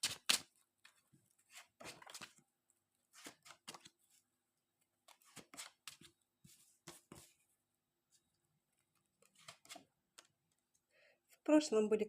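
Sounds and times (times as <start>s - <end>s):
cards rustling: 0.0s - 2.4s, 3.1s - 4.0s, 5.0s - 7.3s, 8.9s - 10.3s.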